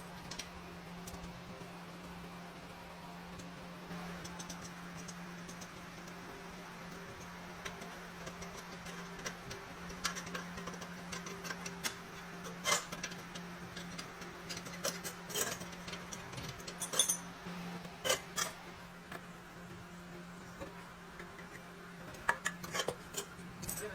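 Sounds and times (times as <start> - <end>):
steady low hum: 0.0 - 23.9
small metal parts clicking: 4.1 - 6.2, 7.1 - 17.3, 20.6 - 23.9.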